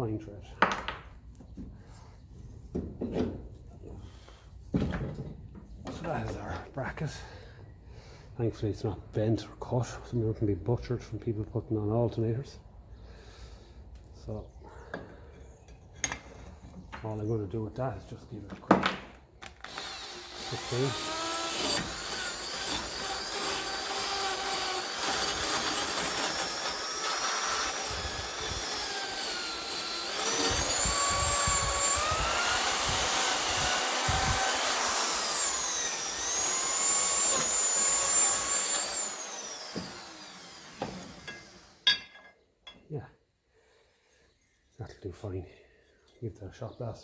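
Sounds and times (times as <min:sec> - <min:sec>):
power tool scouring metal: 0:19.7 - 0:41.8.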